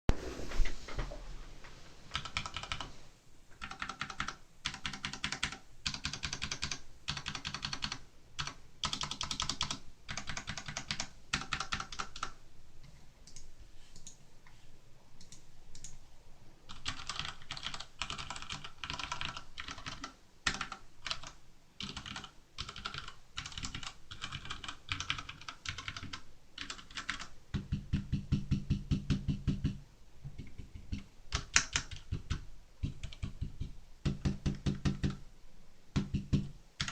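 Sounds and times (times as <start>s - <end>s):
mechanical keyboard typing: 2.1s - 2.9s, 3.6s - 12.4s, 16.7s - 29.8s, 30.4s - 35.2s, 36.0s - 36.9s.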